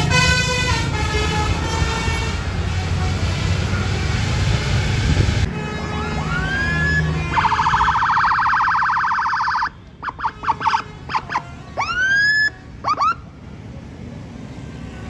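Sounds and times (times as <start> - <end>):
musical air horn tune: 0.0 - 7.6
bus engine and road rumble: 0.0 - 15.0.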